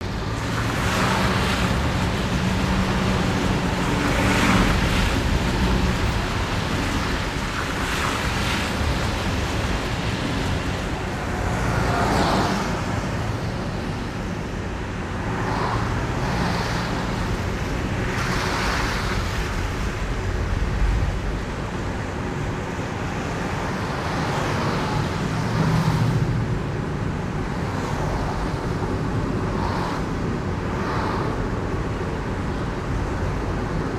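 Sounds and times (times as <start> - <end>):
engine and road rumble: 0.0 - 33.9
tyres hissing on wet asphalt: 0.2 - 13.9.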